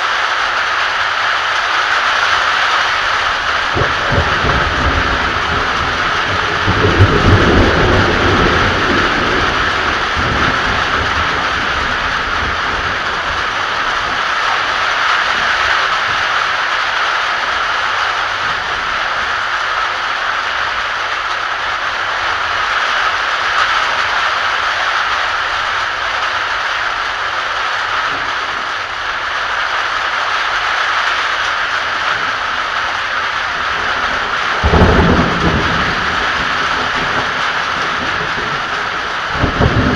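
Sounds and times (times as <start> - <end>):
heavy rain: 0.0 - 39.9
low thunder rumble: 3.3 - 16.2, 33.6 - 39.9.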